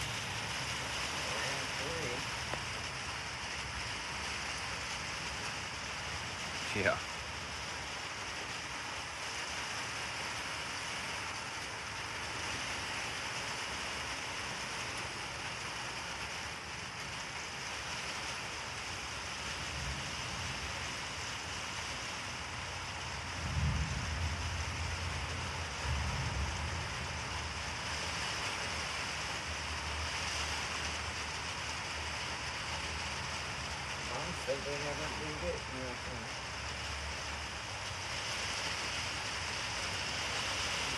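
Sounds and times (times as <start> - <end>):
rain hissing: 0.0 - 40.9
distant thunder rumbling: 22.7 - 30.2.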